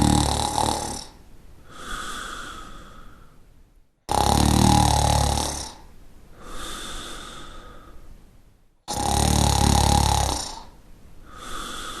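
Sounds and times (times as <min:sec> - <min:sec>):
person snoring: 0:00.0 - 0:03.0, 0:04.1 - 0:07.8, 0:08.9 - 0:12.0
soft airy breath with whistle: 0:01.6 - 0:03.4, 0:11.2 - 0:12.0.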